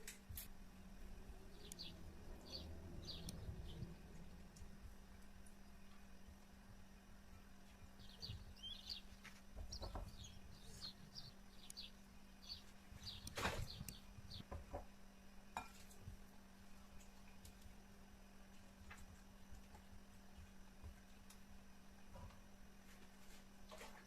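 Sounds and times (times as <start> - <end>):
steady low hum: 0.0 - 24.0
faint bird chirps: 1.5 - 4.1, 7.8 - 14.5.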